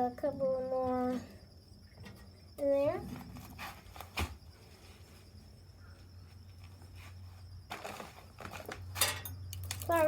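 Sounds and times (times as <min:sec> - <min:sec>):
faint handling sounds: 0:03.0 - 0:10.0.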